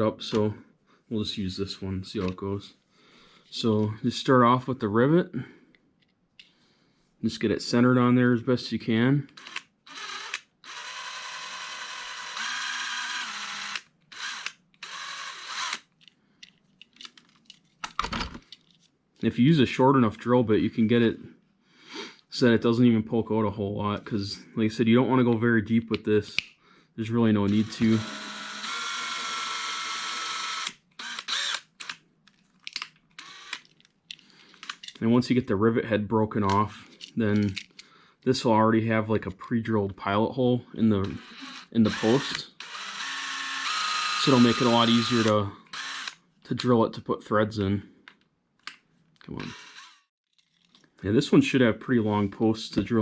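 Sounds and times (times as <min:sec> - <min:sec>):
cordless drill drilling metal: 0:09.4 - 0:15.9, 0:27.5 - 0:32.0, 0:33.2 - 0:33.7, 0:41.0 - 0:46.2, 0:49.4 - 0:50.1
light clicks and rattles of handling: 0:15.9 - 0:19.3, 0:32.2 - 0:35.1, 0:36.4 - 0:37.9.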